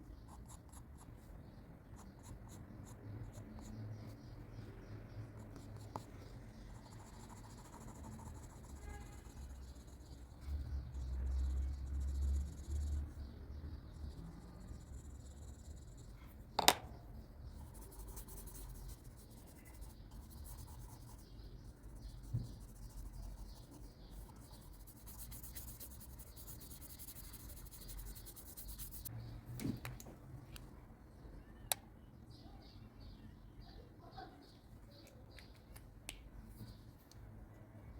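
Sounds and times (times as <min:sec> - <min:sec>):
pencil scratching on paper: 0:00.2 - 0:01.3, 0:01.9 - 0:04.1, 0:05.3 - 0:13.3, 0:17.5 - 0:29.1.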